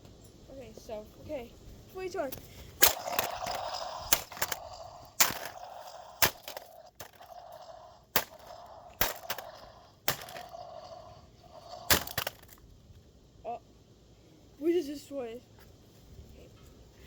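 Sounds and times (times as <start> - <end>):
faint steady hum: 0.0 - 17.0
hammer strikes smashing object: 5.2 - 7.4, 8.1 - 9.5.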